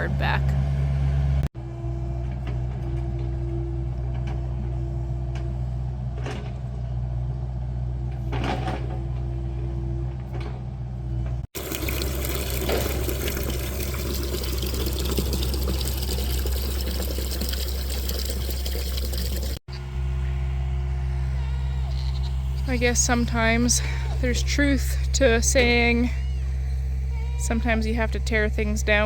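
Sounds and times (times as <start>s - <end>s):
excavator engine humming: 0.0s - 29.0s.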